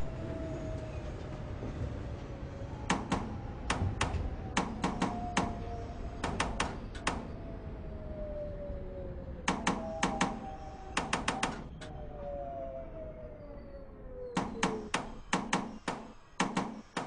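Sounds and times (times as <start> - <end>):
low train rumble: 0.0 - 17.0
train wheels clacking over rail joints: 2.9 - 5.6.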